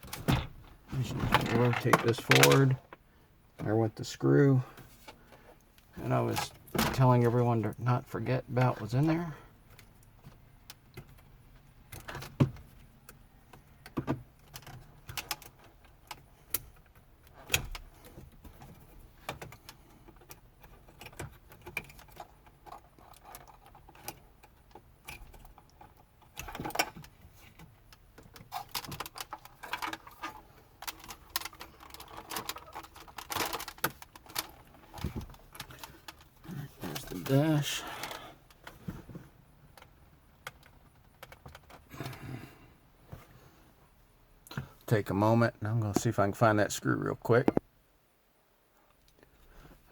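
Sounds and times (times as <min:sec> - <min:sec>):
plastic clips clicking and rattling: 0:28.2 - 0:34.8.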